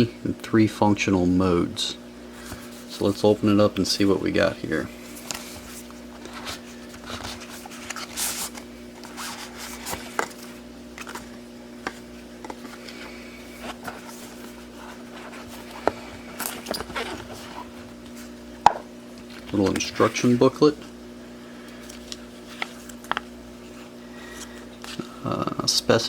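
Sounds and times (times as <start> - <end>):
packaging rustling: 5.0 - 18.5, 21.6 - 25.0
packaging scraping: 5.1 - 18.4.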